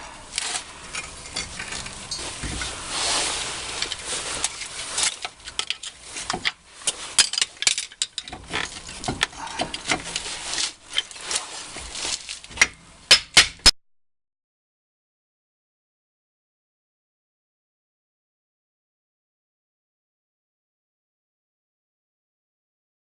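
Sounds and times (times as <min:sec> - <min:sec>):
metal tools clinking and scraping: 0:00.3 - 0:12.7.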